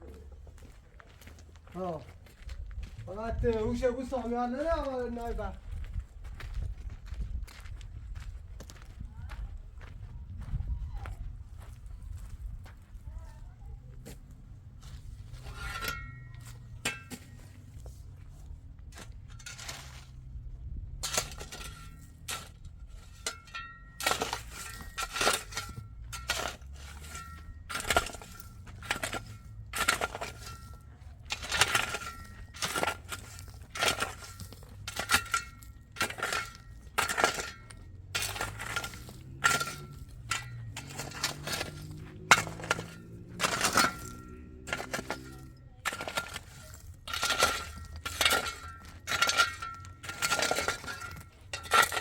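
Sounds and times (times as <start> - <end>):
sharp clinking crunching strikes: 15.3 - 17.8, 21.0 - 52.0.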